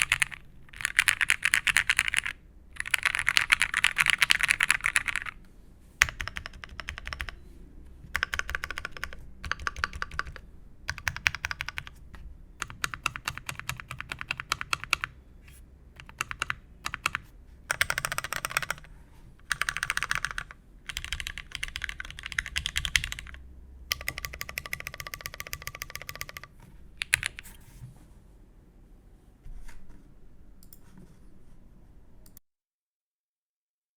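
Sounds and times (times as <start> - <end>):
keyboard typing: 0.0 - 5.4, 6.0 - 7.4, 8.0 - 15.2, 16.0 - 27.7.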